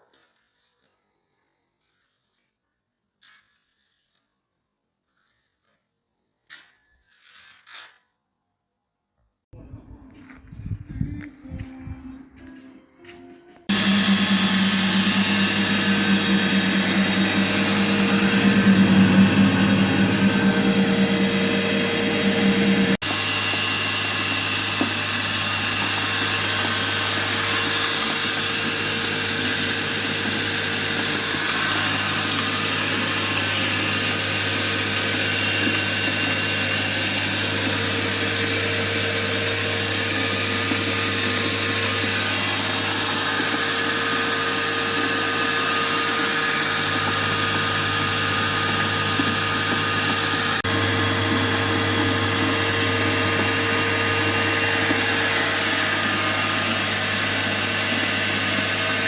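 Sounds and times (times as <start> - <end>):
grain mill whirring: 12.4 - 59.0.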